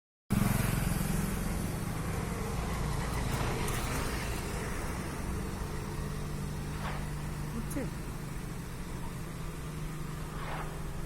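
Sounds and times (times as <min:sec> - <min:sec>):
engine running with deep hum: 0:00.3 - 0:11.0.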